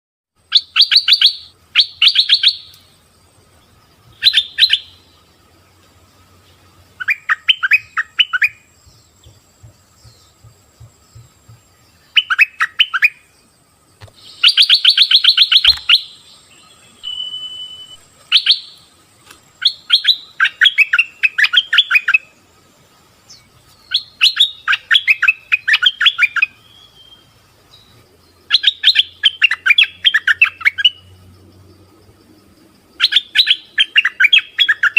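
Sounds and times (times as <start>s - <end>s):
faint steady hum: 0.4s - 34.9s.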